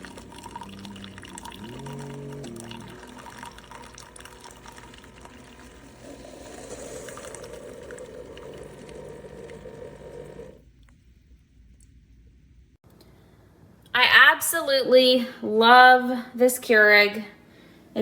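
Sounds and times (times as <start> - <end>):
coffee maker pump running: 0.0 - 10.6
coffee streaming into mug: 0.0 - 10.6.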